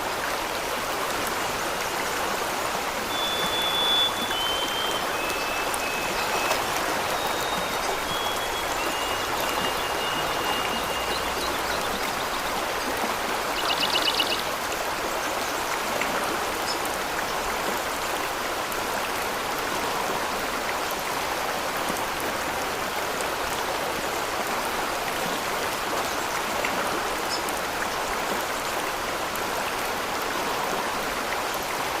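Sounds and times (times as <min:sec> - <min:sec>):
waterfall rushing: 0:00.0 - 0:20.6
high whistled notes: 0:03.1 - 0:09.4.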